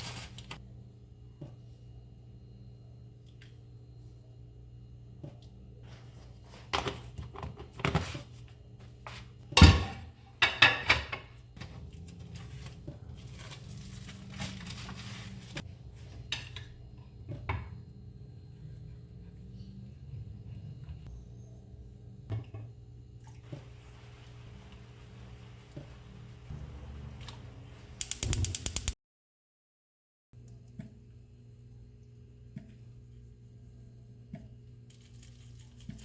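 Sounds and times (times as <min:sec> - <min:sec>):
low steady hum: 0:00.0 - 0:29.0
dishes clinking and knocking: 0:09.6 - 0:11.4.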